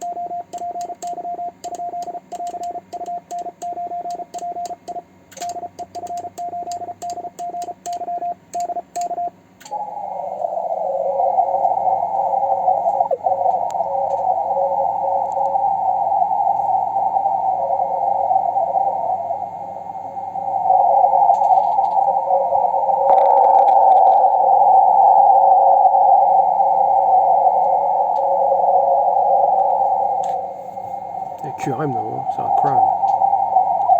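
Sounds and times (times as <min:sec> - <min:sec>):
morse code sidetone: 0:00.0 - 0:09.4
weaker morse tone: 0:00.0 - 0:33.9
shortwave radio hiss: 0:09.7 - 0:23.1, 0:26.1 - 0:33.9
radio band hiss: 0:29.3 - 0:33.9.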